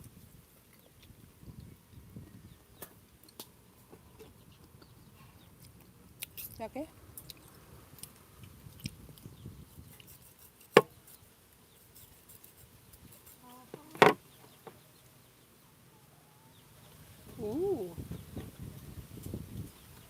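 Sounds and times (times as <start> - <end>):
fruit being peeled and eaten: 4.5 - 14.0.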